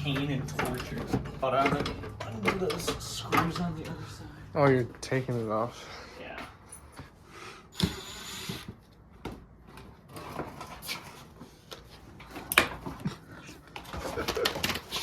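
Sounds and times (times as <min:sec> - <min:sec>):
hand tools clicking and knocking: 0:00.0 - 0:04.2, 0:11.7 - 0:15.0.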